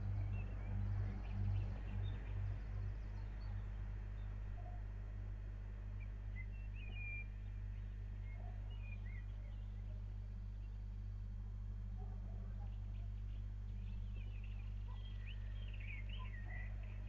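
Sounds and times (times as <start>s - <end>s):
steady low hum: 0.0s - 17.0s
bird chirps and whistles: 6.4s - 7.3s.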